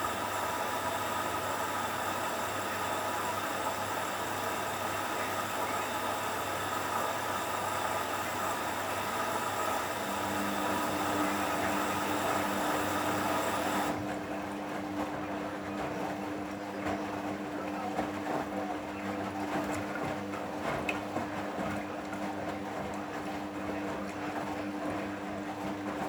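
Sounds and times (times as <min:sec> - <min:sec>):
washing machine hiss and hum: 0:00.0 - 0:26.0
low motor hum: 0:05.0 - 0:18.0.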